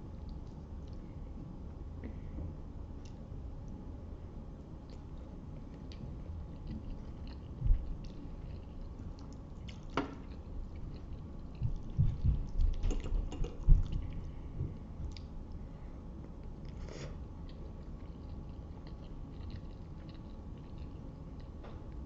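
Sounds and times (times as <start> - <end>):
wet chewing: 4.8 - 15.6, 16.2 - 22.0.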